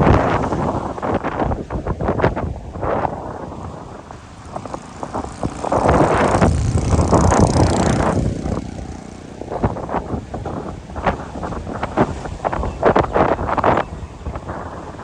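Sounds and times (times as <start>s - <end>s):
vehicle passing by: 3.3s - 12.2s.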